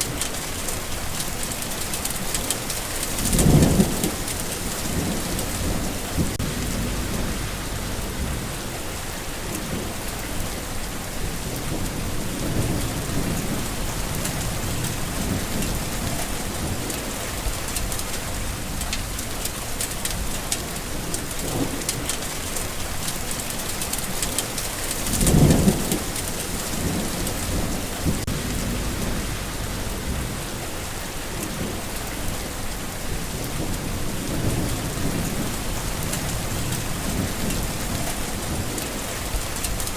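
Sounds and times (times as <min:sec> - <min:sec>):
steady rain hiss: 0:00.0 - 0:39.9
low rumble: 0:05.5 - 0:08.8, 0:27.2 - 0:30.7.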